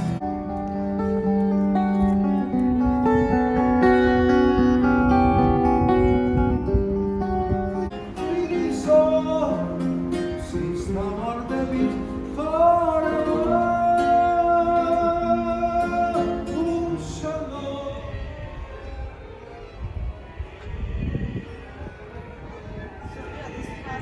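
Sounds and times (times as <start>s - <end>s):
plucked acoustic guitar: 0.0s - 17.9s
person singing: 7.9s - 19.0s.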